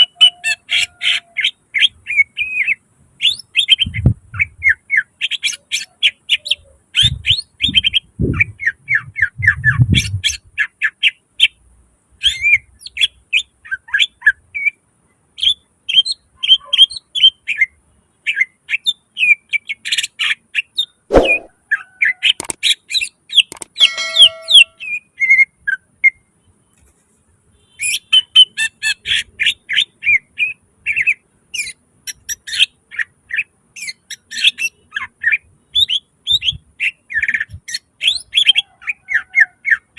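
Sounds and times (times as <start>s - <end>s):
bird chirping and whistling: 21.1s - 21.5s, 23.5s - 25.4s
sharp click: 21.1s - 21.5s, 22.4s - 22.6s, 23.4s - 23.8s.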